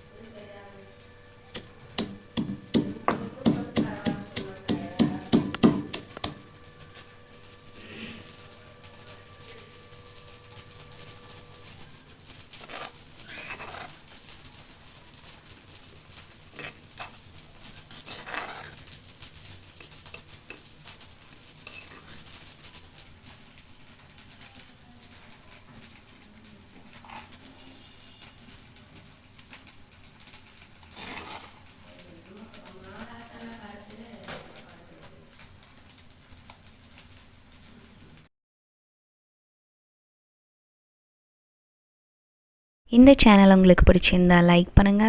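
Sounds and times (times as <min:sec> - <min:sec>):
utensils and dishes clinking: 0:16.0 - 0:22.5.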